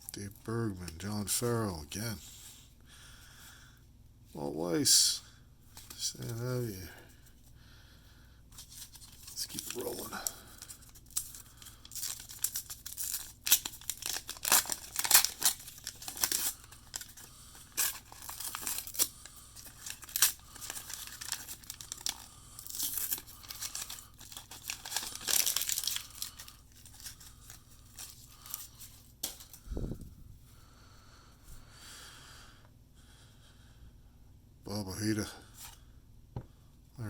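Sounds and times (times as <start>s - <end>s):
wrapper tearing and crinkling: 8.6s - 29.6s.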